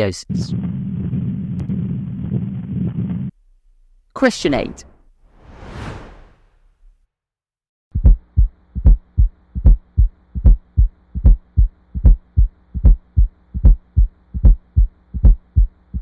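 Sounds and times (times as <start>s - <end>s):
heartbeat with gallop: 7.9s - 16.0s
faint steady hum: 8.0s - 16.0s.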